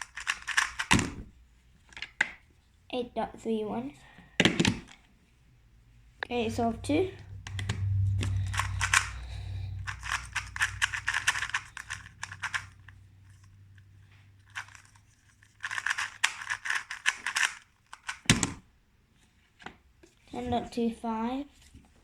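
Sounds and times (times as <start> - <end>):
puzzle cube clicking: 0.0 - 1.3, 7.4 - 18.6.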